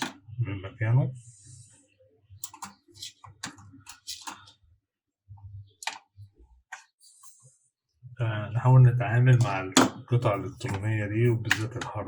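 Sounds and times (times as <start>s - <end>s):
hard drive clicks and scrapes: 2.4s - 4.6s.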